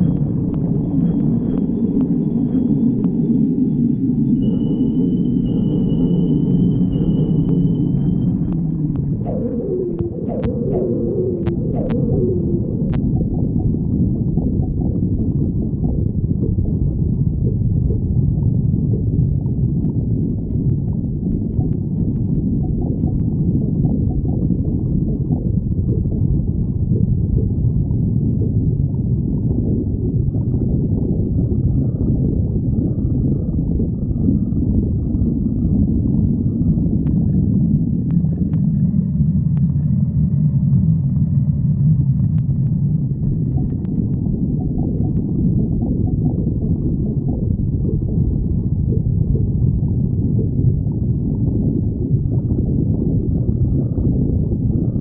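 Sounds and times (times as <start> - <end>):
stomach growling and gurgling: 0.0 - 55.0.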